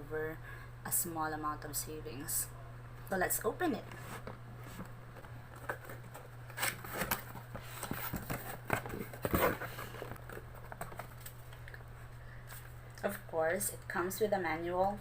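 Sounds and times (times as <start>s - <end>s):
steady low hum: 0.0s - 15.0s
cardboard packaging rustling: 4.0s - 11.7s.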